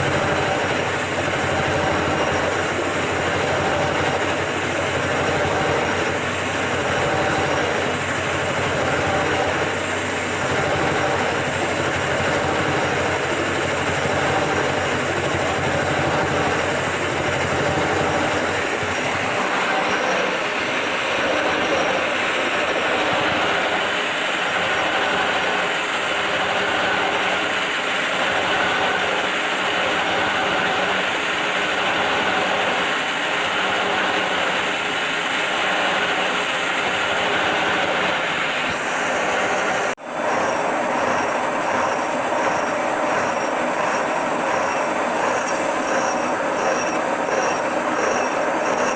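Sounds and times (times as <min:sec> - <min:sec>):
milling machine cutting steel: 0:40.1 - 0:48.9.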